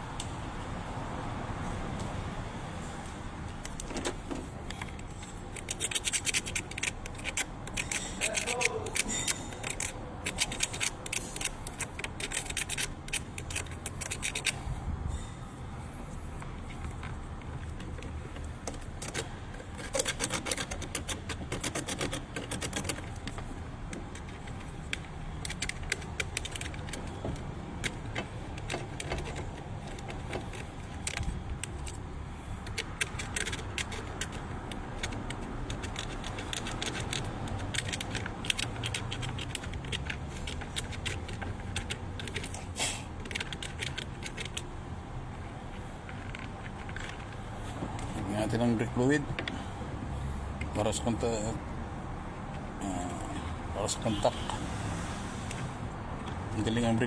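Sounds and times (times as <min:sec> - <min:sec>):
hand tools clicking on metal: 0:04.7 - 0:14.6, 0:32.6 - 0:42.6.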